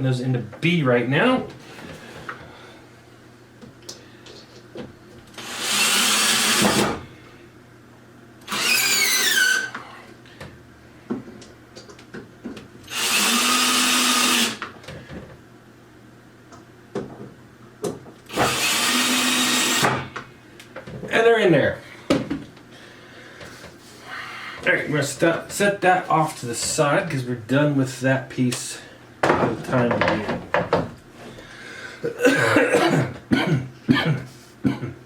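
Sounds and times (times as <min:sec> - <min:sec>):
power drill driving screws: 0:05.3 - 0:07.0, 0:08.4 - 0:09.7, 0:12.8 - 0:14.6, 0:18.3 - 0:20.0.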